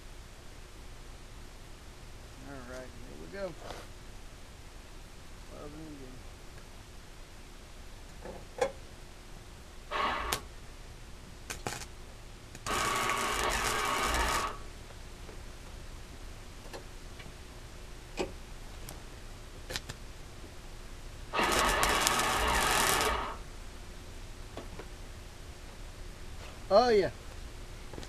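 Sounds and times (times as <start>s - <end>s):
welder arc crackling: 9.9s - 10.5s, 11.4s - 11.9s, 12.5s - 14.8s, 21.3s - 23.5s.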